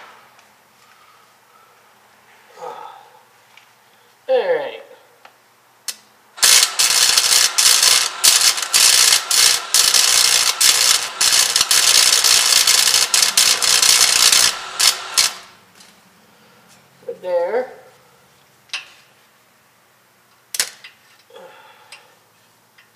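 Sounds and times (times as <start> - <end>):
welder crackling sizzle: 6.4 - 15.6.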